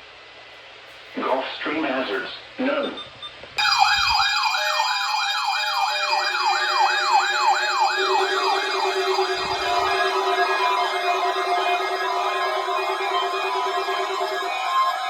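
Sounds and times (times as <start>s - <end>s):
steady electronic tones: 2.9s - 15.0s
electronic siren wail: 3.6s - 15.0s.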